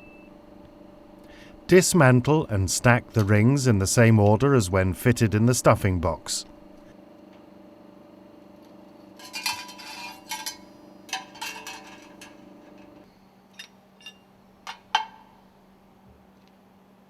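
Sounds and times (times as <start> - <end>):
metal rings clinking: 9.2 - 12.3.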